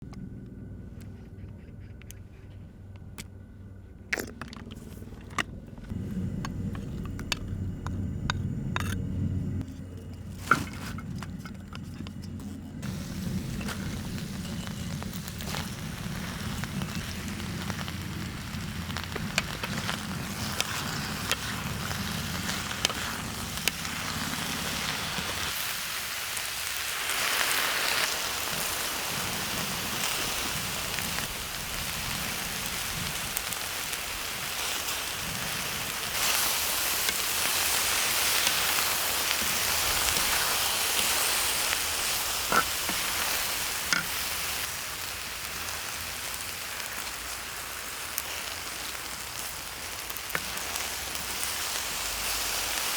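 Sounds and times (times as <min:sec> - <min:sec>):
low hum: 0:00.0 - 0:25.6
food sizzling in oil: 0:12.8 - 0:52.9.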